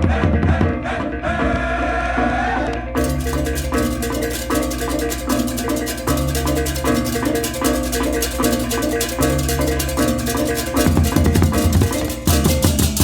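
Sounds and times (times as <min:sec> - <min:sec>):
cymbal clashes: 0:03.0 - 0:13.0
gong-chime melody: 0:03.0 - 0:13.0.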